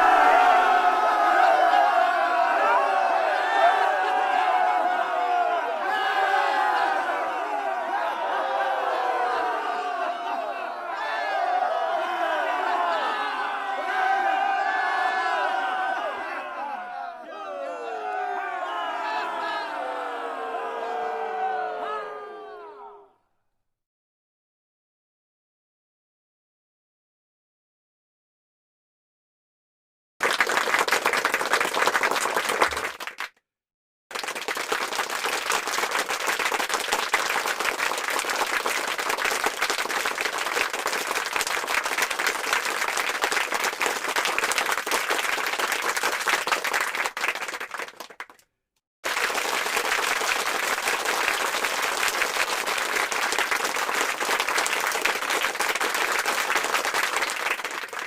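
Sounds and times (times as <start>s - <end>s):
crowd clapping: 0.0s - 16.9s, 30.2s - 33.4s, 34.1s - 58.0s.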